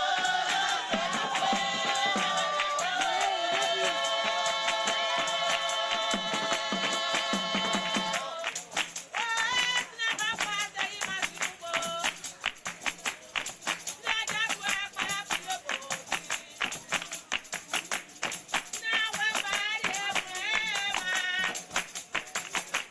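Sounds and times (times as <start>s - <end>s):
person singing: 0.0s - 8.6s
fast dense percussion: 0.0s - 16.2s.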